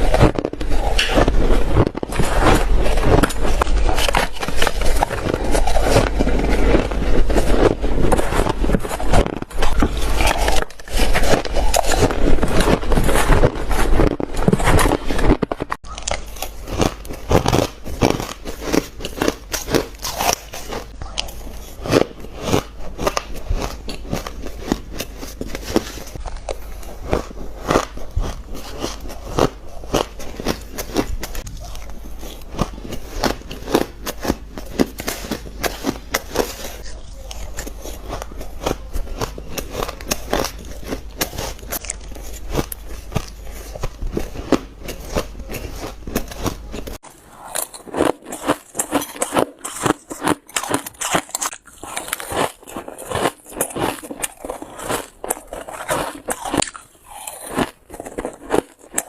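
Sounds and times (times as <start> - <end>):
shaved ice crunching: 15.8 - 59.0.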